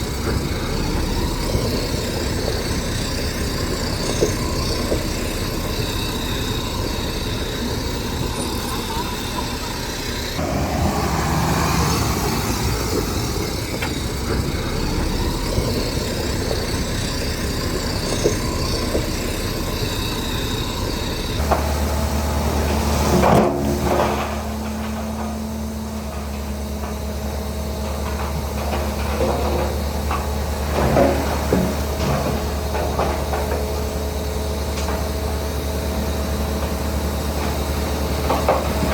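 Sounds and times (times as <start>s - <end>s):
diesel machinery running: 0.0s - 38.9s
metal clanks and knocks: 13.0s - 35.5s.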